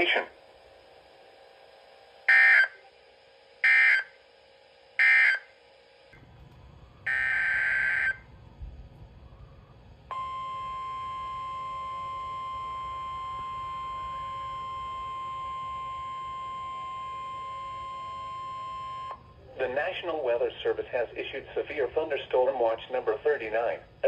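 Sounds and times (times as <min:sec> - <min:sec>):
piercing steady alert tone: 0:02.3 - 0:02.9, 0:03.6 - 0:04.1, 0:05.0 - 0:05.5, 0:07.1 - 0:08.2
screechy digital data bursts: 0:03.6 - 0:04.2, 0:05.0 - 0:05.6, 0:07.1 - 0:08.2.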